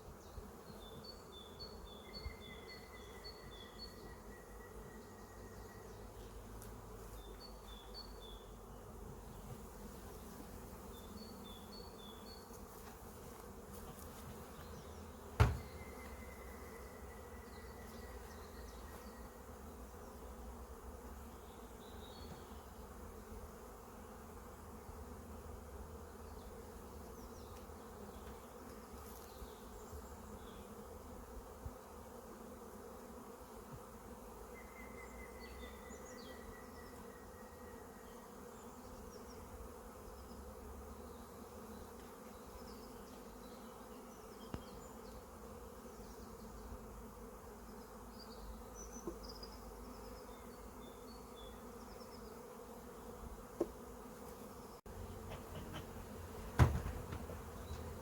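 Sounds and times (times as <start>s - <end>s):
honeybees buzzing: 0.0s - 58.0s
sharp knock: 15.4s - 15.8s, 56.6s - 57.3s.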